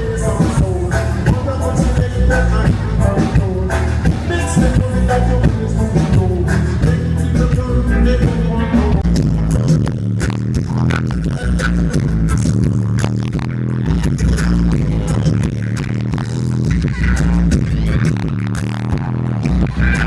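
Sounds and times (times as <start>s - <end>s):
person singing: 0.0s - 9.1s
loud music over sound system: 0.0s - 20.0s.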